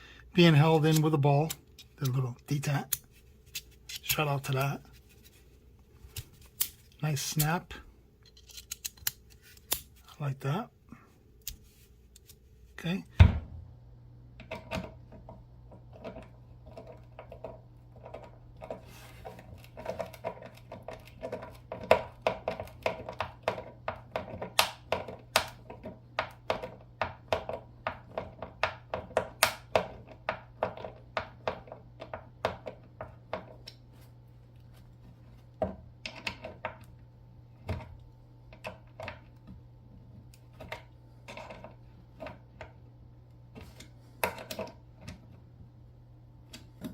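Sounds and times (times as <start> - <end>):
multitool metal clicks and snaps: 8.3 - 9.9.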